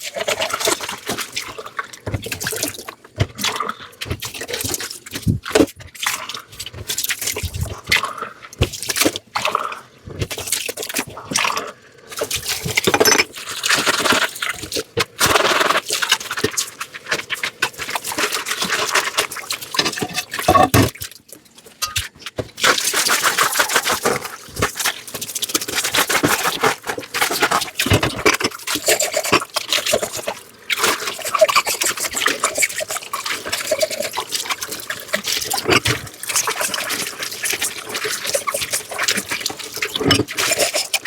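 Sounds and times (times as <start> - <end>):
scrubbing dishes with water: 0.0 - 41.0
dishes clinking: 12.9 - 13.4, 19.8 - 21.0, 21.8 - 22.1, 40.0 - 40.3.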